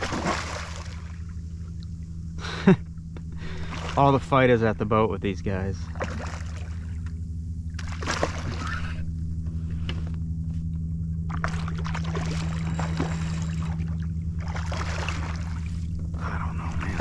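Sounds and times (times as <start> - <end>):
water splashing against a kayak: 0.0 - 1.1, 7.8 - 8.9, 11.3 - 15.9
steady low hum: 0.0 - 17.0.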